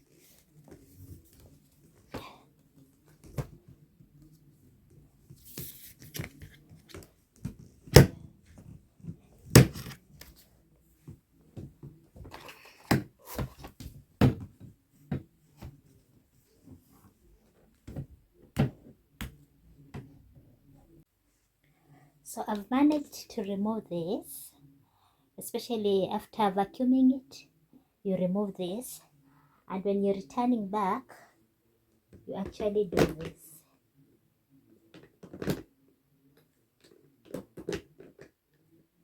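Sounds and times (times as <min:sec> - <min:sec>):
plastic parts clicking and knocking: 0:34.9 - 0:35.7, 0:36.8 - 0:38.5.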